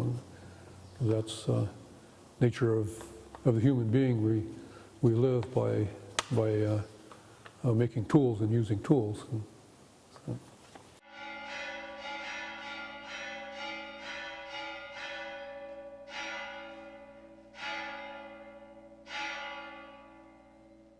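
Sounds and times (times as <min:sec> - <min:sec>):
bells ringing: 0:11.0 - 0:20.9.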